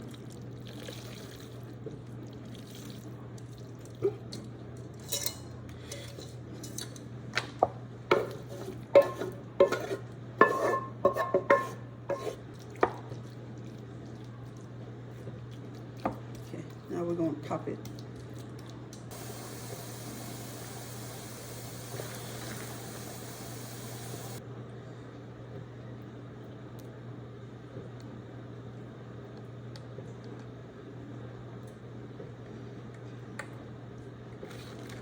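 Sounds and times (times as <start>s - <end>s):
utensil clinking against cookware: 5.0s - 7.0s, 8.1s - 12.4s.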